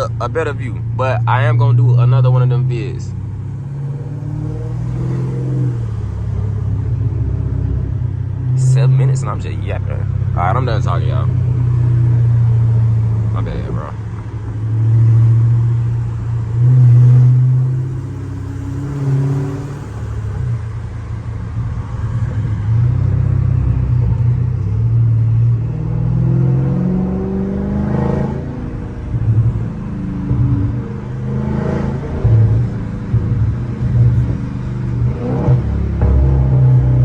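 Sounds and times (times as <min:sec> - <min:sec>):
exhaust crackles: 0:00.0 - 0:27.6, 0:28.2 - 0:37.0
car exhaust revving: 0:00.0 - 0:37.0.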